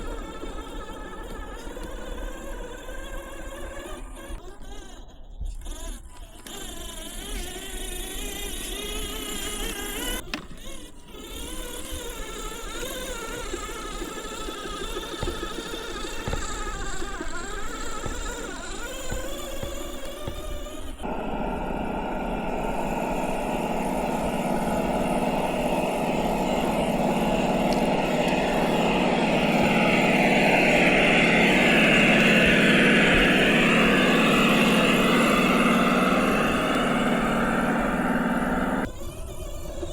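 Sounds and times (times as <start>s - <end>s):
simulated engine sound: 13.5s - 38.9s.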